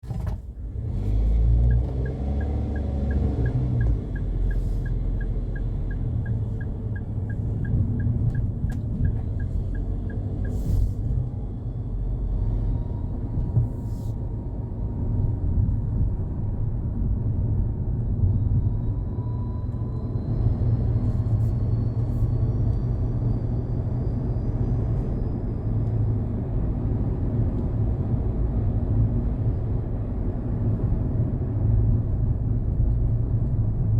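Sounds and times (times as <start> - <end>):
van engine running: 0.0 - 17.1.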